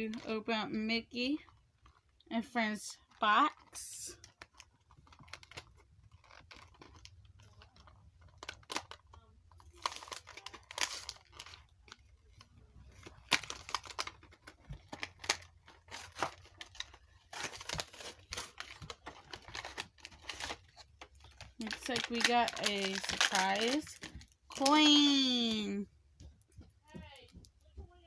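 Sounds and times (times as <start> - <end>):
packaging tearing and crinkling: 3.5 - 25.7.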